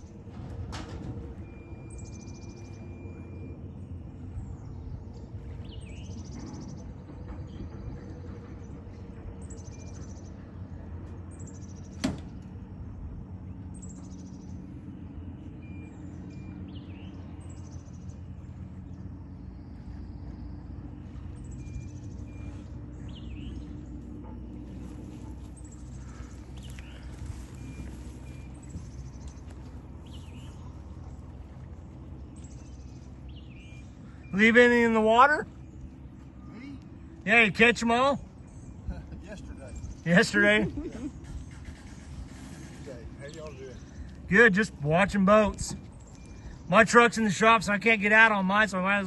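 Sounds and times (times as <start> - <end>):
low engine hum: 0.0 - 49.0
bird calling high notes: 33.1 - 42.1.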